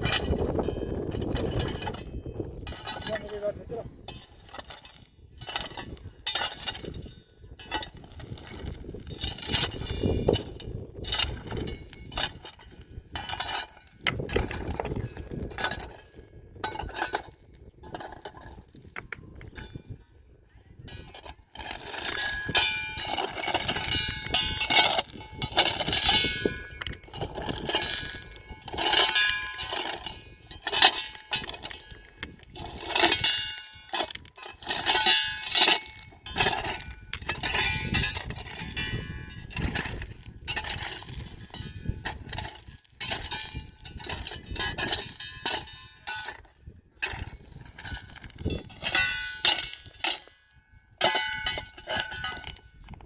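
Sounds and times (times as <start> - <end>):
livestock bells clanking: 51.0 - 52.6.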